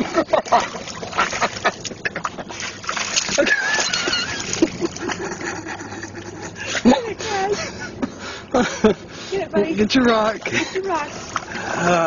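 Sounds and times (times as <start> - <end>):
water splashing and sloshing: 0.0 - 12.0.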